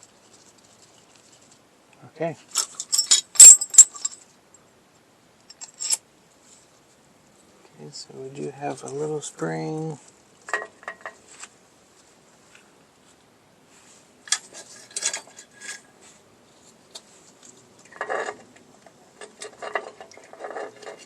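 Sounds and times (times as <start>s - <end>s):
metal springs clinking: 2.6s - 4.2s.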